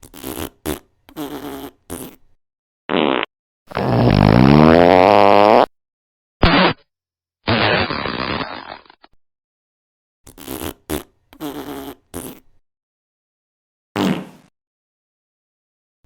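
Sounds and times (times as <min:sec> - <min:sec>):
fart sounds: 0:00.0 - 0:02.2, 0:02.9 - 0:05.8, 0:06.4 - 0:09.2, 0:10.3 - 0:12.5, 0:14.0 - 0:14.5.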